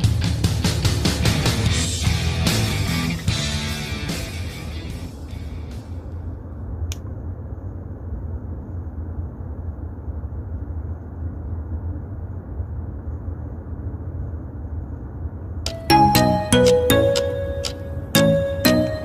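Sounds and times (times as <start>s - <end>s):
low outdoor rumble: 0.0s - 19.0s
sharp click: 6.9s - 7.1s.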